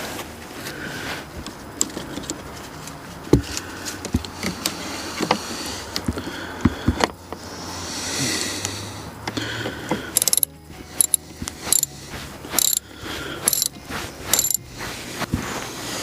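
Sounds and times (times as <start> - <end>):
metallic tool clicks and knocks: 10.2 - 11.9, 12.6 - 12.8, 13.4 - 14.6.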